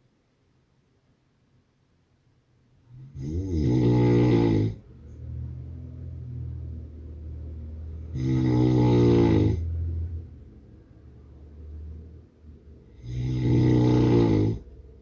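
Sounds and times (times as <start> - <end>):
man snoring: 2.9 - 4.8, 8.1 - 9.7, 12.9 - 14.6.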